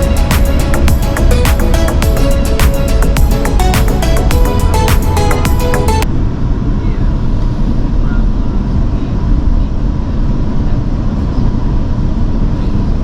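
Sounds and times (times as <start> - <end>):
background music: 0.0 - 6.0.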